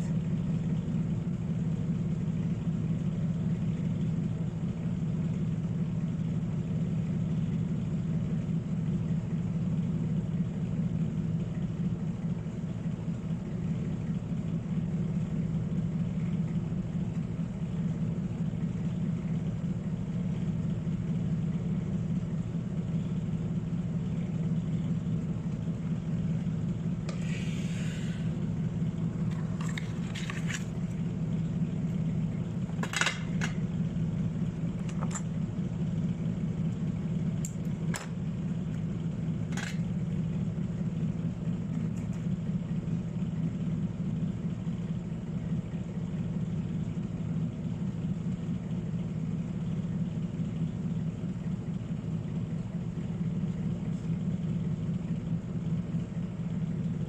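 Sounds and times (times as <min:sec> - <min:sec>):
small motor or fan humming: 0:12.9 - 0:57.0.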